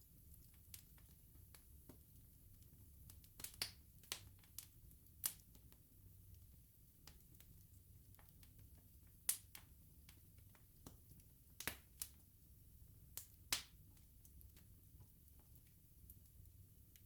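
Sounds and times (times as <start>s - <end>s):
burning wood crackling and popping: 0.2s - 12.3s, 13.0s - 17.0s.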